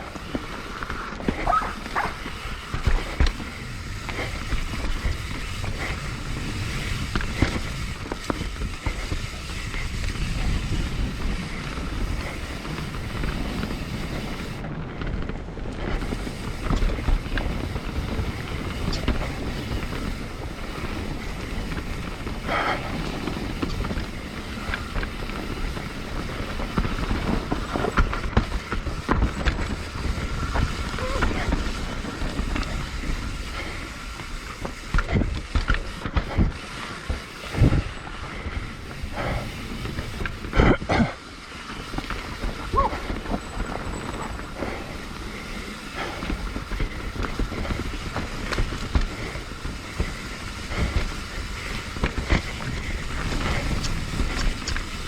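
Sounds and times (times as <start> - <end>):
bike knocks and rattles: 0.0 - 55.0
tyres rolling over dirt and rock: 0.0 - 55.0
wind buffeting microphone: 0.0 - 55.0.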